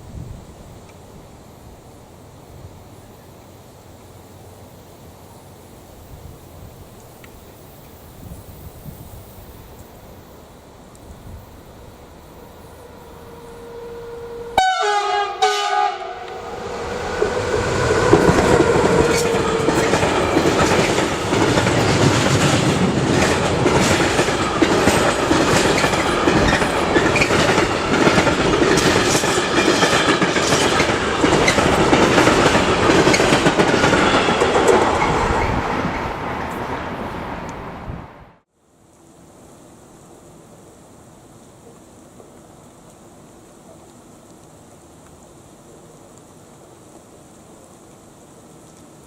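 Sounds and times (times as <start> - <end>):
train horn blasts: 12.3 - 20.4
train wheels clattering: 16.3 - 36.6.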